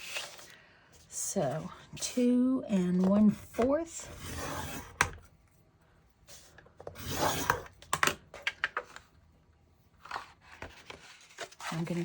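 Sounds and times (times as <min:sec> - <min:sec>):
stylus scraping along groove: 0:07.0 - 0:07.7.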